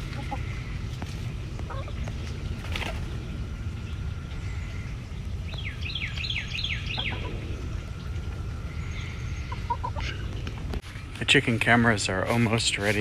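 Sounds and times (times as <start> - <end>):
steady low rumble: 0.0 - 13.0
small bird chirping: 3.6 - 11.1.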